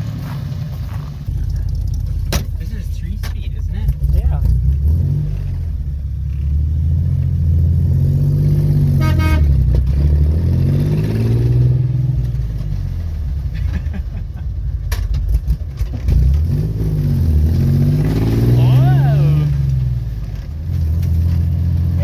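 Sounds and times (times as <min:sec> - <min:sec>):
car engine revving: 0:00.0 - 0:22.0
car horn toot: 0:08.9 - 0:09.7.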